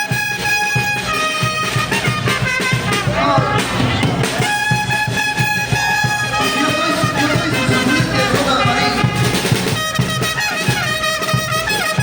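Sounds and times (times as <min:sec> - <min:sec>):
brass band playing: 0:00.2 - 0:12.0.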